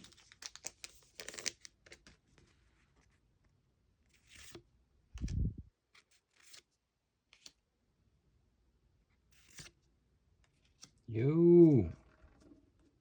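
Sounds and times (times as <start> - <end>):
cards sliding against each other: 4.2 - 4.6, 6.1 - 6.7, 9.3 - 9.8.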